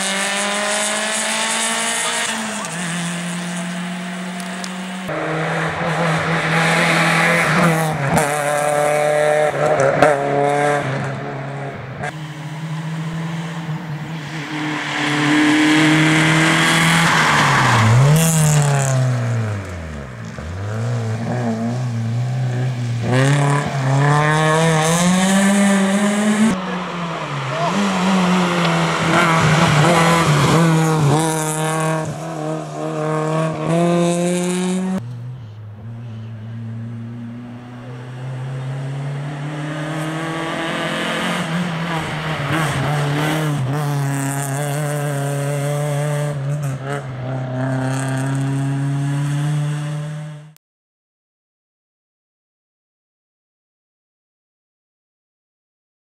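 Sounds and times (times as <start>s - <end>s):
rally car engine: 0.0s - 50.6s.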